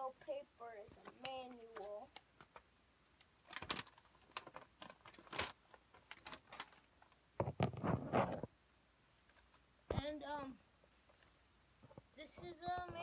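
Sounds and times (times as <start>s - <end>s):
paper being handled: 0.8s - 2.6s, 3.4s - 7.1s
plastic bag crinkling: 3.3s - 7.9s.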